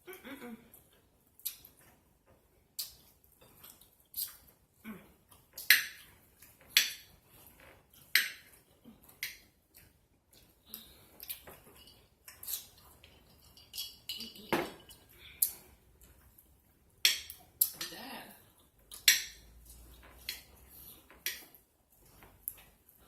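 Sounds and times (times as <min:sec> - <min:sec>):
utensils clinking on dishes: 0:10.8 - 0:15.5.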